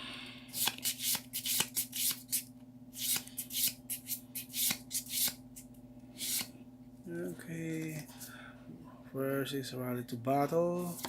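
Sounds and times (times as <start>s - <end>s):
cards flicked papery swishes: 0.6s - 2.4s.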